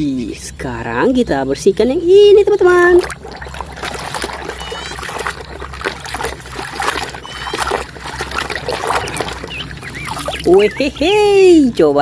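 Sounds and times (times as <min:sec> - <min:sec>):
water sloshing and splashing: 0:02.5 - 0:11.2.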